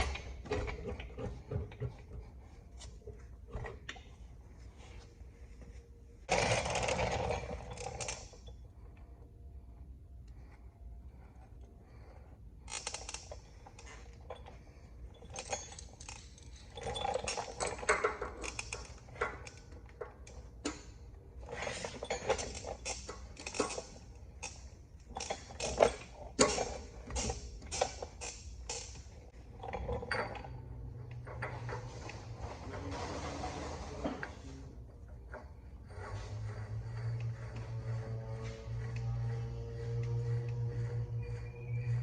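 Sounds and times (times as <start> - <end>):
metal tools clinking: 12.7 - 19.6.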